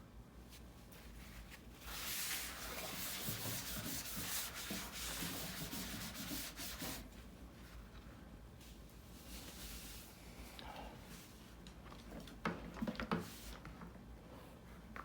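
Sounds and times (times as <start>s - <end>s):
panels rubbing and scraping: 1.9s - 7.0s.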